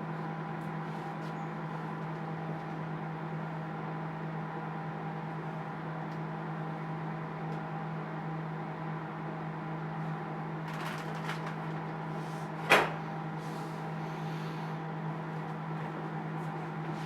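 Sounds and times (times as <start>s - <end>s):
microwave oven humming: 0.0s - 17.0s.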